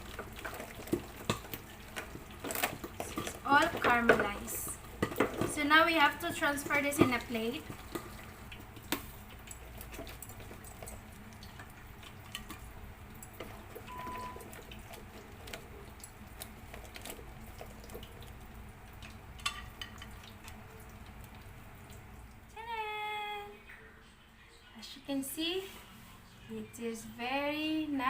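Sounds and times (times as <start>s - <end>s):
short beep: 13.9s - 14.4s.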